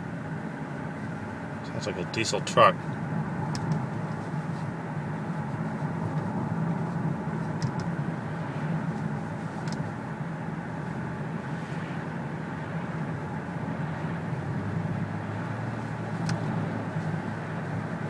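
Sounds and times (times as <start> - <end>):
car engine running: 0.0 - 18.0
road noise: 0.0 - 18.0.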